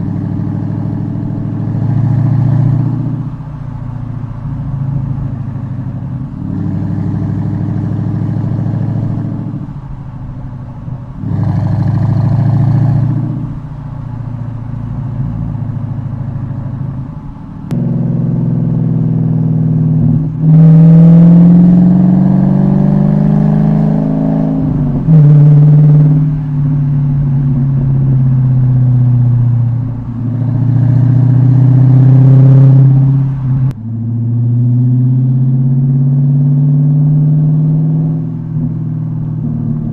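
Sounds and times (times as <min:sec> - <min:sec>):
car engine exhaust roaring: 0:00.0 - 0:39.9.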